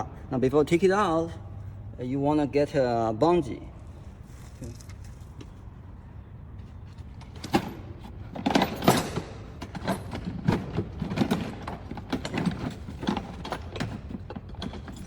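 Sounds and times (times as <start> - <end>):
metal parts and tools rattling: 6.9 - 15.0.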